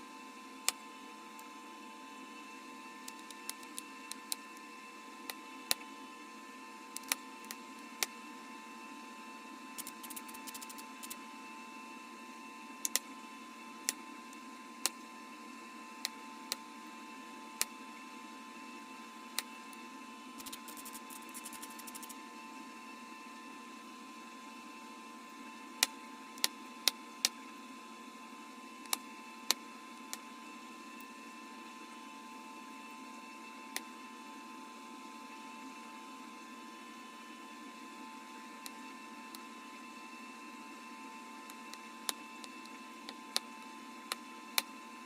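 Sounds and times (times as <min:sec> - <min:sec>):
steady low hum: 0:00.0 - 0:45.0.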